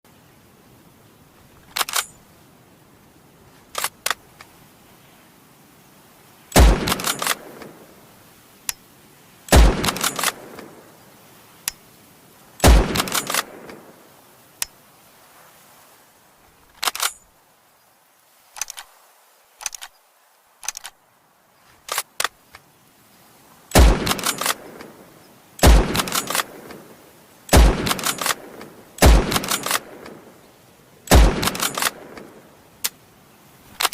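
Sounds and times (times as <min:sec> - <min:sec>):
rifle bolt clicking: 0:01.7 - 0:02.1, 0:06.6 - 0:07.7, 0:09.5 - 0:10.7, 0:12.6 - 0:13.8, 0:16.8 - 0:17.2, 0:18.6 - 0:18.9, 0:20.6 - 0:21.0, 0:24.1 - 0:24.9, 0:25.6 - 0:26.8, 0:27.5 - 0:30.2, 0:31.1 - 0:33.0
rifle shots: 0:06.6 - 0:07.8, 0:09.5 - 0:10.7, 0:12.6 - 0:13.8, 0:23.7 - 0:24.8, 0:25.6 - 0:26.8, 0:27.5 - 0:30.2, 0:31.1 - 0:32.3.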